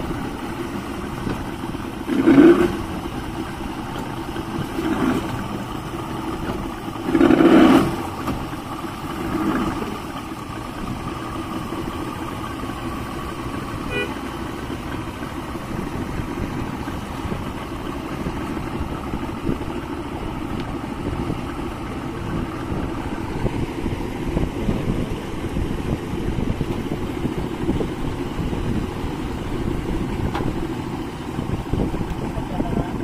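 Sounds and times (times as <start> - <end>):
outboard motor running: 0.0 - 33.0.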